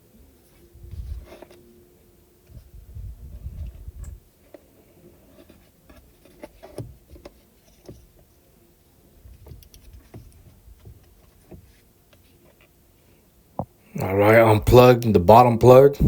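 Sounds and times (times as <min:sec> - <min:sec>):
low rumble of handling: 0:00.5 - 0:01.7, 0:02.4 - 0:04.3.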